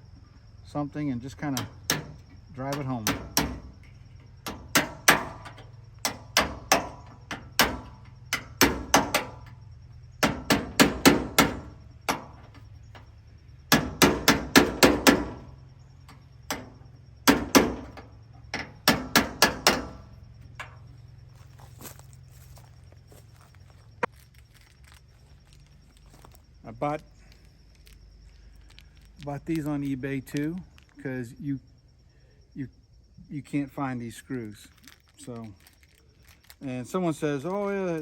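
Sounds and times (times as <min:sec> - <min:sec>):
hammer tapping on metal: 0:02.7 - 0:03.6, 0:04.4 - 0:09.3, 0:18.6 - 0:20.0.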